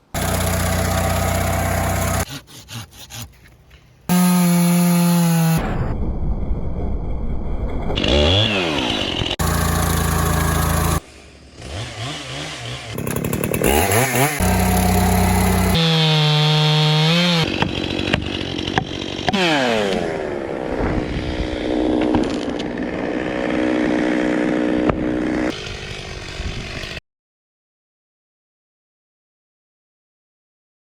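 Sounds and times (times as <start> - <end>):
chainsaws running and revving: 0.0 - 3.0, 4.1 - 5.6, 8.0 - 27.0.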